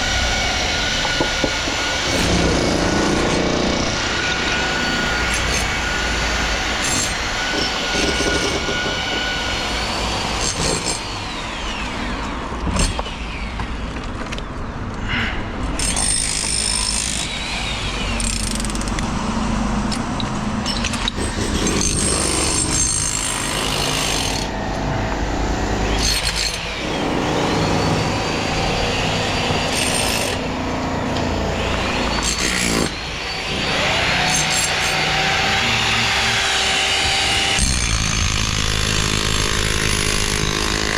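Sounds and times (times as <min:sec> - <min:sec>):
machine whine: 0:00.0 - 0:10.2, 0:24.3 - 0:40.4
machinery and engines running: 0:00.0 - 0:15.8, 0:17.2 - 0:40.9.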